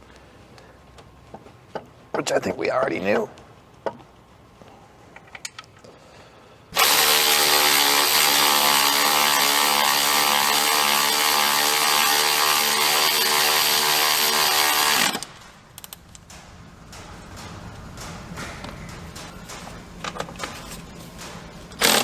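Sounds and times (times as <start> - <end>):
power tool buzzing: 6.8 - 15.4, 21.8 - 22.0.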